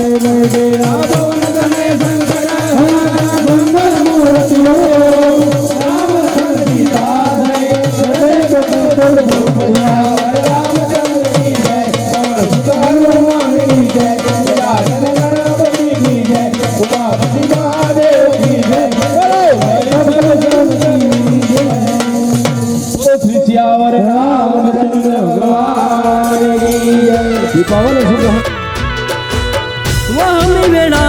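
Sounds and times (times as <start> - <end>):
tabla and drum rhythm: 0.0 - 31.0
wavering melody line: 25.9 - 31.0.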